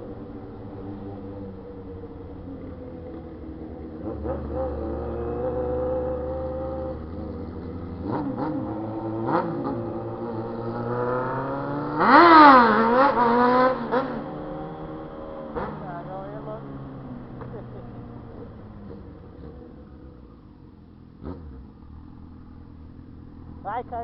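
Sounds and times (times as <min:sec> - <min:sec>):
motorcycle engine idling and revving: 0:00.0 - 0:24.0.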